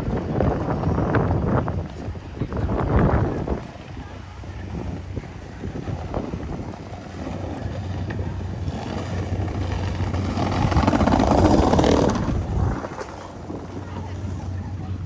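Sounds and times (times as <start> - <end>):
engine passing by: 5.7 - 15.0.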